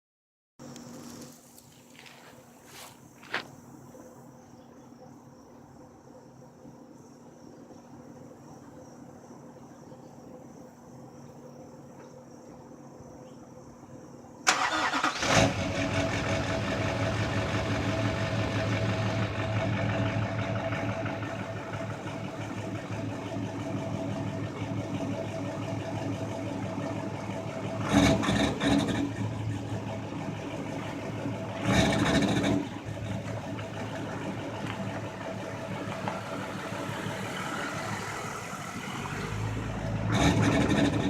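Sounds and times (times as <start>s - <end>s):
crickets chirping: 0.6s - 15.3s, 32.7s - 41.0s
car engine cranking and idling: 14.4s - 41.0s.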